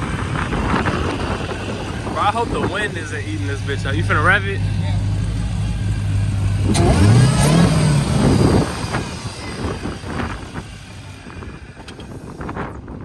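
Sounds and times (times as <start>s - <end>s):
car engine revving: 0.0s - 12.6s.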